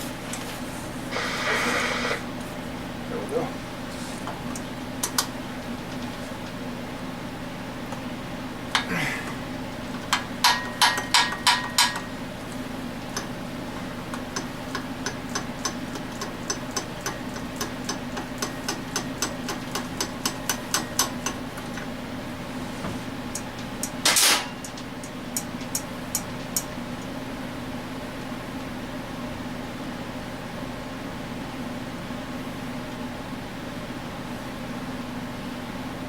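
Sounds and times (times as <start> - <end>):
steady low hum: 0.0 - 36.0
hand tools tapping metal: 9.8 - 12.1.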